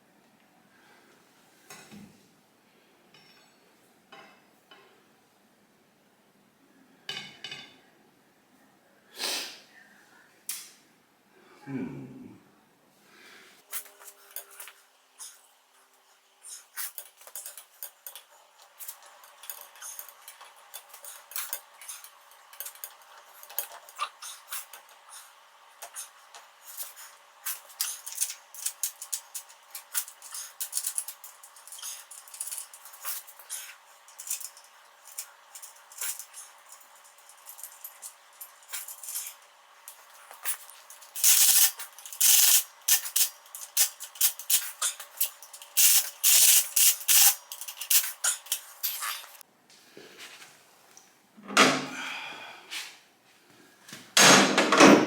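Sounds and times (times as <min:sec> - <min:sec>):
metal tools clinking: 0:16.6 - 0:24.7, 0:26.6 - 0:49.4.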